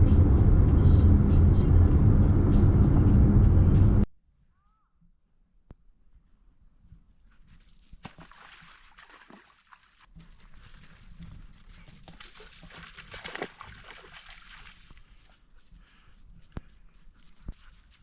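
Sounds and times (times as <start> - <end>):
water splashing and sloshing: 7.6 - 16.0.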